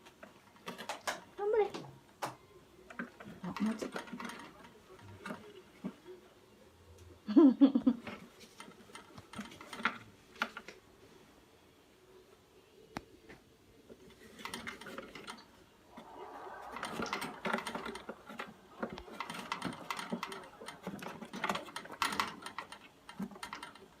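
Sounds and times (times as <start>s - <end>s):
kitten clicking and rustling: 8.0s - 10.8s, 16.8s - 24.0s.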